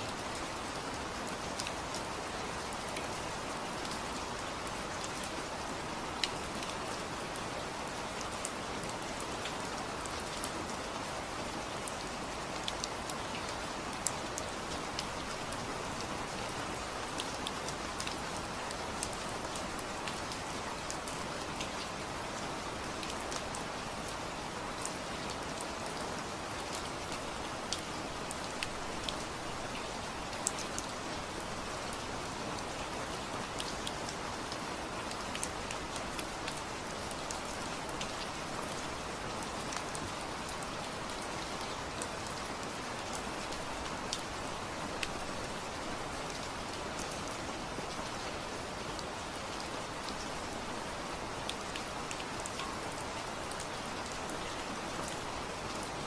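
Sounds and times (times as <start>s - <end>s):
steady rain hiss: 0.0s - 56.0s
raindrops ticking on surface: 23.0s - 48.2s.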